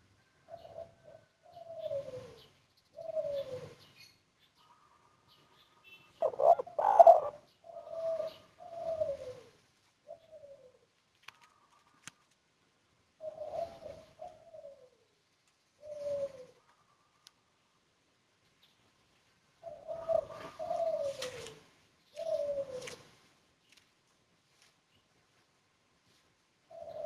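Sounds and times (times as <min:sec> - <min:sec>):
dove cooing: 0:00.5 - 0:03.9, 0:06.2 - 0:10.9, 0:13.2 - 0:15.1, 0:15.8 - 0:17.0, 0:19.6 - 0:23.2, 0:26.6 - 0:27.0.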